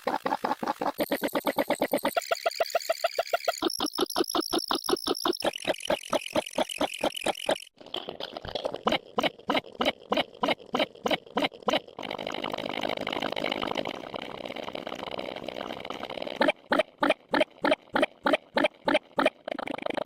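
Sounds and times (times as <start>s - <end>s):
ticking beat of sharp clicks: 0.9s - 7.8s.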